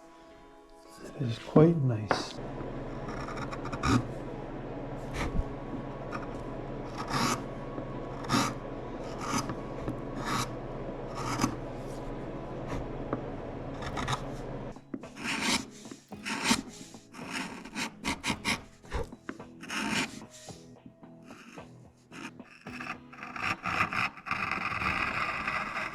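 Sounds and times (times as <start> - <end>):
steady hum: 0.0 - 15.8
hand tool scraping wood: 3.0 - 4.2, 6.0 - 7.4, 8.1 - 12.1, 13.8 - 14.4, 15.0 - 20.6, 21.3 - 25.9.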